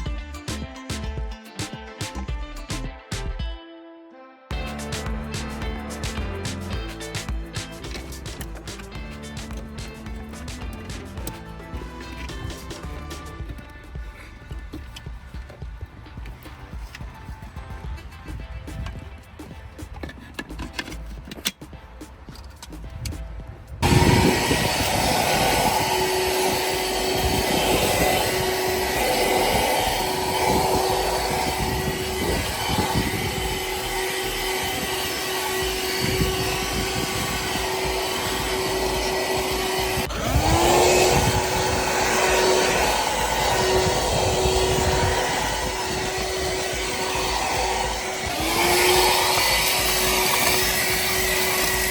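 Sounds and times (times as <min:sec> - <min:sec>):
handheld vacuum cleaner running: 0:04.7 - 0:15.7, 0:23.8 - 0:51.9.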